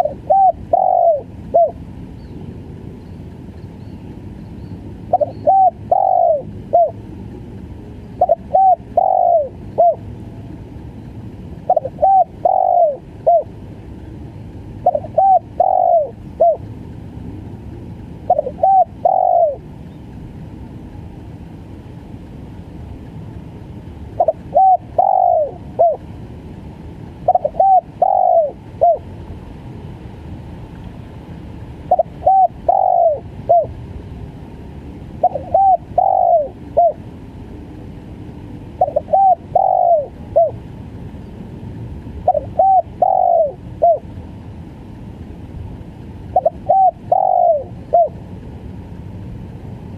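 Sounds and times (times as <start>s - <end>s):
dove cooing: 0.0s - 1.8s, 5.1s - 7.0s, 8.1s - 10.4s, 11.6s - 13.6s, 14.8s - 16.7s, 18.2s - 19.7s, 24.1s - 26.1s, 27.2s - 29.1s, 31.8s - 33.8s, 35.2s - 37.0s, 38.8s - 40.6s, 42.2s - 44.1s, 46.3s - 48.2s
steady low hiss: 0.0s - 49.9s.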